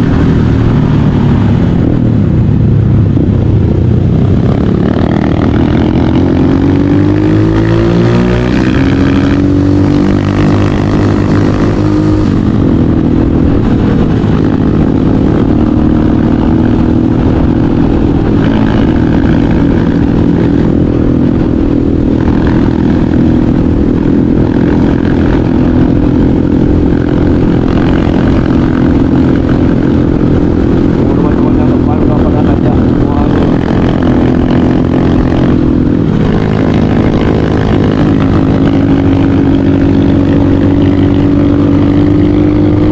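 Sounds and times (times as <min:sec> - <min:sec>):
motorcycle engine revving: 0:00.0 - 0:42.9.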